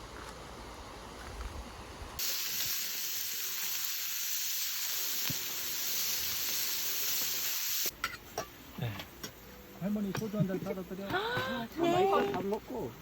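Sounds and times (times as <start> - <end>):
loud steady hiss: 0.0 - 10.1.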